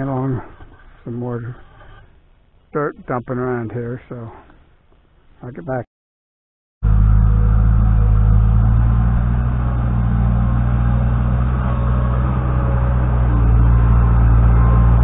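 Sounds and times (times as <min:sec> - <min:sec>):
diesel engine running under load: 0:06.8 - 0:15.0.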